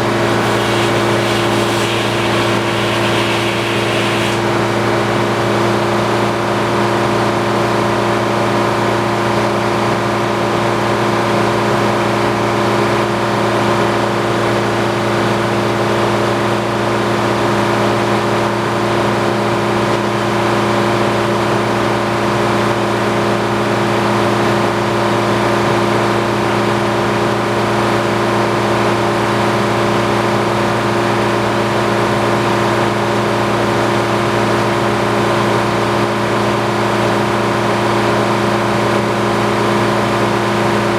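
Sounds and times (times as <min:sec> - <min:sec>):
circular sawmill humming: 0:00.0 - 0:04.6.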